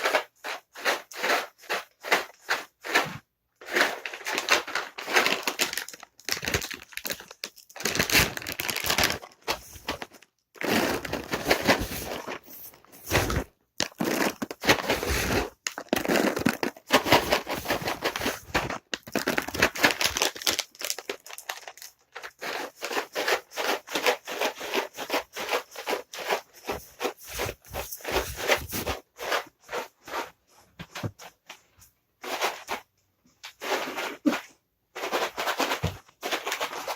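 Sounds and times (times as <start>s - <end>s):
cat treats rattling in container: 3.6s - 13.2s, 13.8s - 29.9s.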